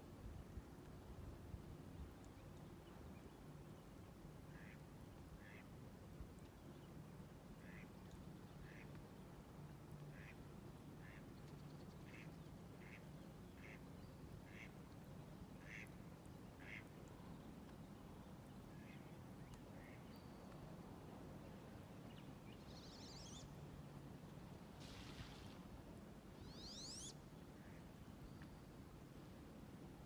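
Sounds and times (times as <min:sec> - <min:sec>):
faint duck quacking: 0:04.5 - 0:04.8, 0:05.4 - 0:05.7, 0:07.6 - 0:07.9, 0:08.6 - 0:08.9, 0:10.1 - 0:10.4, 0:11.0 - 0:11.2, 0:12.1 - 0:13.0, 0:13.6 - 0:13.8, 0:14.4 - 0:14.8, 0:15.6 - 0:16.0, 0:16.6 - 0:16.9.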